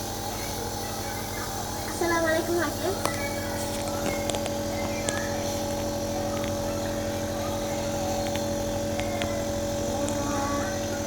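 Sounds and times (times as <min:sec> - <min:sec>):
small motor humming: 0:00.0 - 0:11.0
faint clicks: 0:02.9 - 0:06.9, 0:07.7 - 0:10.3.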